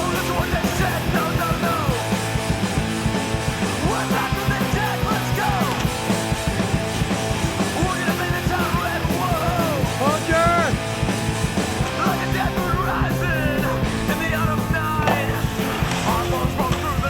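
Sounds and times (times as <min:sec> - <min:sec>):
punk rock song: 0:00.0 - 0:17.0
person yelling vocals: 0:11.9 - 0:17.0.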